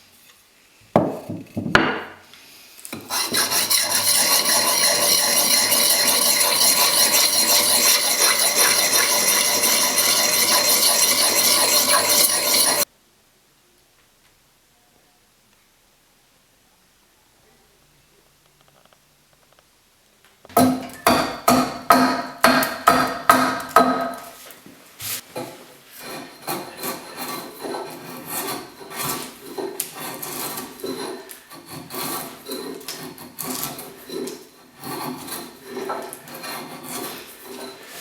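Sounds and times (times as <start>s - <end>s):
sharpening stone on axe edge: 3.0s - 12.9s.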